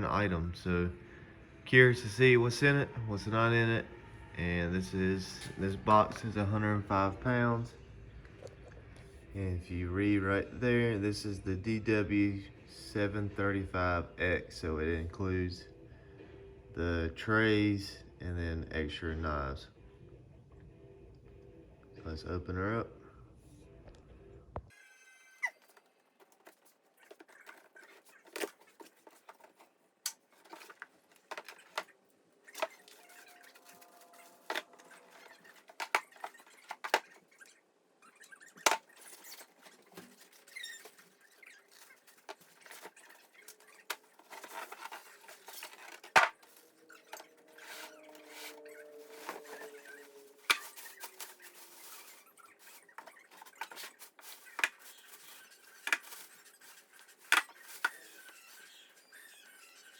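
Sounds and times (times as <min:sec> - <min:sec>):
sliding squeaks: 0:25.2 - 0:59.9
cardboard box scraping and rustling: 0:38.7 - 0:58.7.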